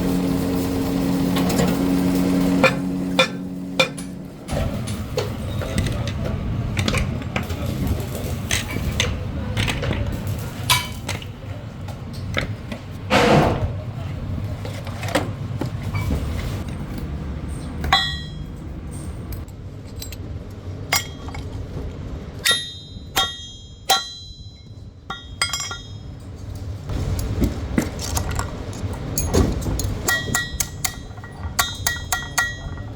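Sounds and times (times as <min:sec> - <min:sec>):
low machinery rumble: 0:00.0 - 0:32.9
steel parts clinking and knocking: 0:16.6 - 0:32.9.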